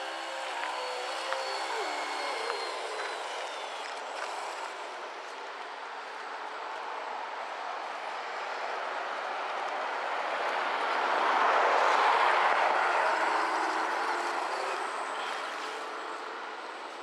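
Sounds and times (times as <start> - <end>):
simulated truck engine from speaker: 11.9 - 17.0.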